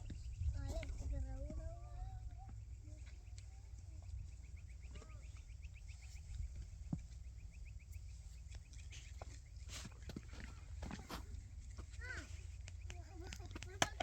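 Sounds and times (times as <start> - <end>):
wind rumble on microphone: 0.0 - 10.0.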